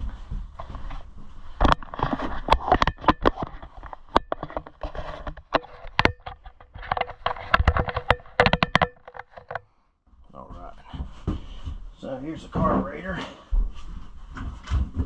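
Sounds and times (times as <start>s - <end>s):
handling knocks clicks and rustles: 0.0s - 9.7s, 12.4s - 15.0s.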